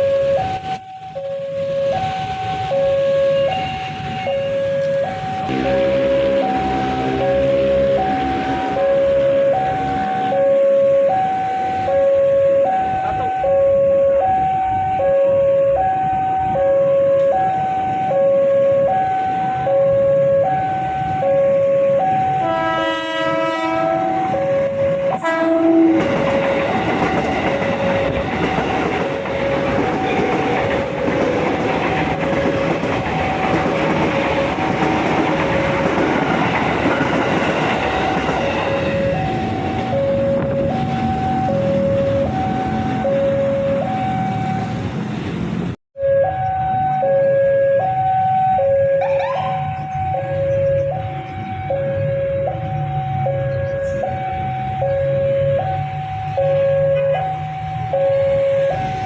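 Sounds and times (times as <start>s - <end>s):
two-tone warning signal: 0.0s - 44.8s, 46.0s - 59.0s
train wheels rumbling: 0.4s - 10.6s, 21.9s - 45.8s
train horn: 5.4s - 11.1s, 18.1s - 28.8s, 56.2s - 59.0s.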